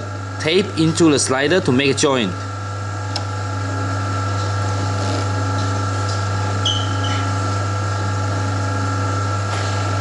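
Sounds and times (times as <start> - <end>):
machine motor humming: 0.0 - 10.0
high squeak: 6.6 - 7.3.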